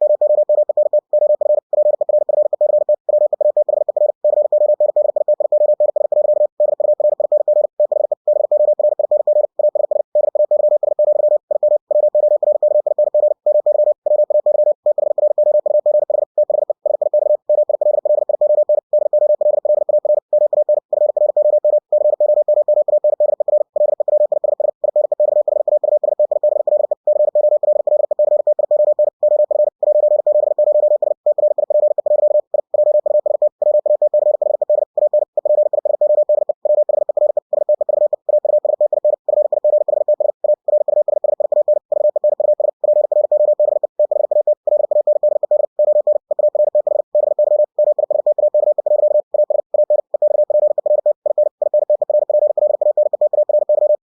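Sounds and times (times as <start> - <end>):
fast morse code tone: 0.0 - 54.0.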